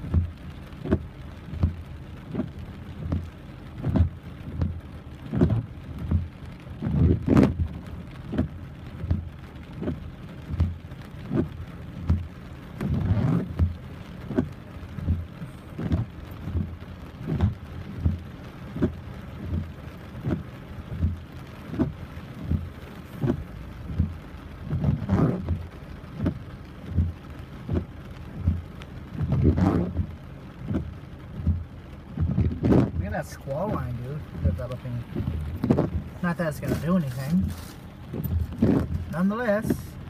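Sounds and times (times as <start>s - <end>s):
heavy rain falling: 0.0s - 40.0s
splashing: 0.0s - 40.0s
regular low thud: 34.4s - 36.2s.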